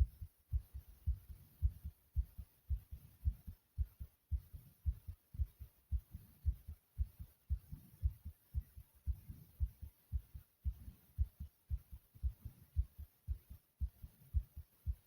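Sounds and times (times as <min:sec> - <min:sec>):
fast heartbeat thumps: 0:00.0 - 0:15.0.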